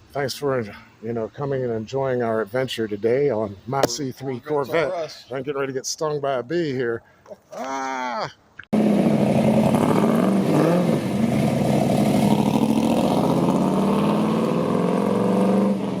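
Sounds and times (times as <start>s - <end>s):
car engine revving: 8.8s - 16.0s.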